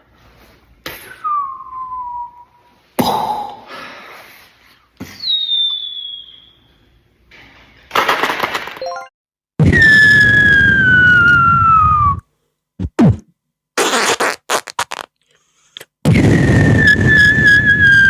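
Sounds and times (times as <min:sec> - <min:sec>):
whistling tones sliding downward: 0:01.1 - 0:02.7, 0:05.2 - 0:06.7, 0:09.8 - 0:12.2, 0:16.2 - 0:18.0.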